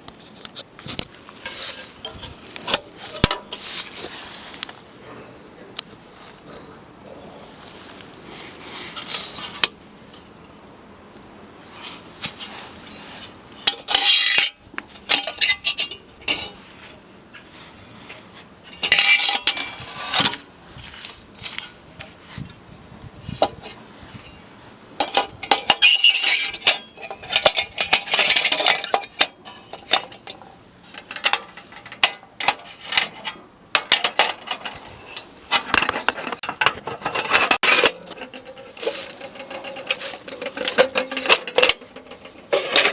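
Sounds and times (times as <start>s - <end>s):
metal lamp parts clinking: 13.5s - 16.6s, 18.6s - 20.4s, 23.6s - 24.4s, 25.0s - 42.9s.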